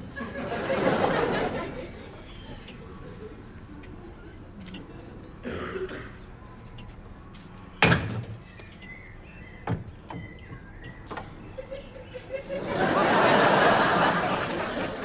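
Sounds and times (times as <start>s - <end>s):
light knocks: 9.6s - 11.4s.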